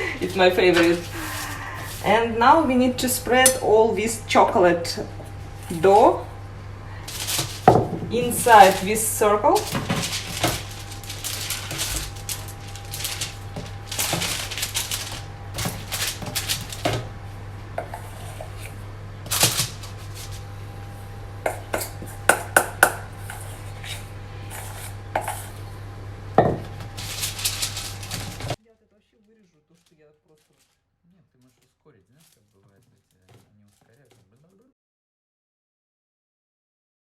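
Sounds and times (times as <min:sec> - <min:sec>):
utensil scraping a bowl: 0:17.8 - 0:18.8, 0:21.7 - 0:25.7.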